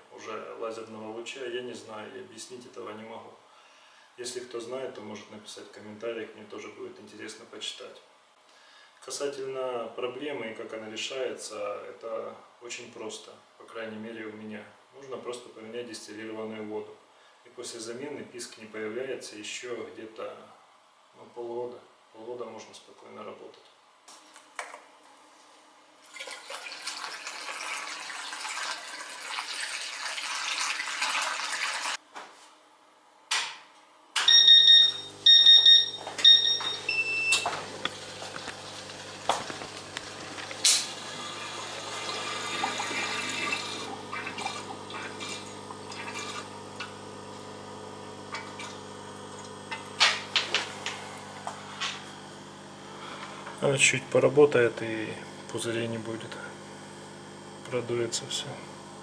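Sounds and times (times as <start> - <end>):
water pouring: 26.0 - 32.0, 37.7 - 46.9, 48.3 - 49.6
machine beeps: 34.2 - 37.6
pump humming: 34.3 - 59.0.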